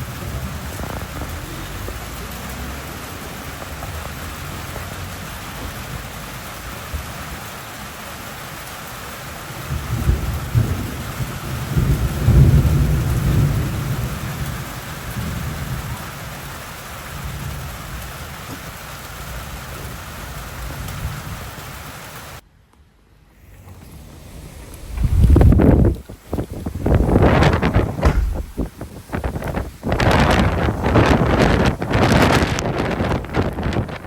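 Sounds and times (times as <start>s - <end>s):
heavy rain and wind: 0.0s - 22.4s, 23.4s - 34.0s
loud low rumbles: 23.9s - 29.4s.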